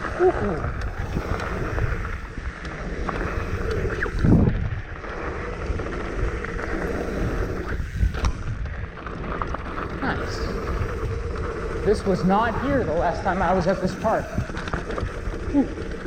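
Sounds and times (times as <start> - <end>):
tyres rolling over dirt: 0.0 - 16.0
wind buffeting microphone: 0.0 - 16.0.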